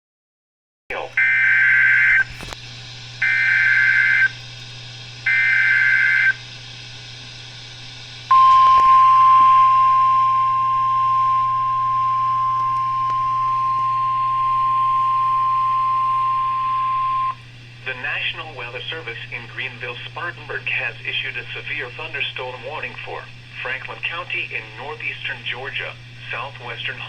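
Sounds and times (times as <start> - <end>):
steady attention tone: 8.3 - 27.0.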